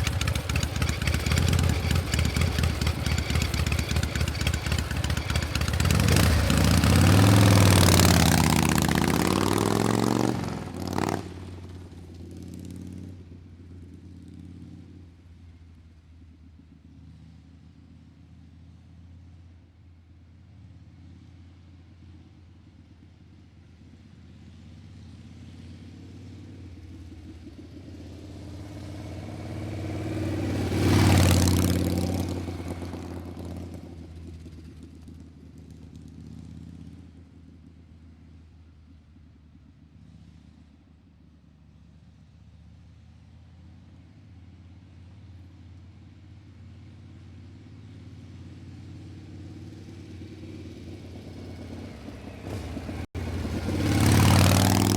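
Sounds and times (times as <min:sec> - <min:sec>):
motor vehicle passing by: 0:00.0 - 0:15.0, 0:24.9 - 0:37.3, 0:47.2 - 0:54.9.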